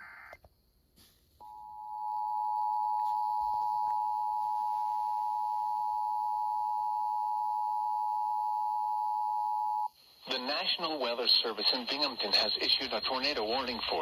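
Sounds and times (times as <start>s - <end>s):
two-tone alarm tone: 1.4s - 9.9s.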